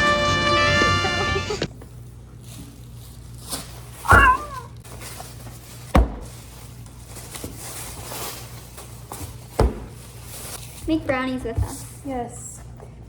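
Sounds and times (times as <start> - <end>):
wavering animal call: 4.1 - 4.7.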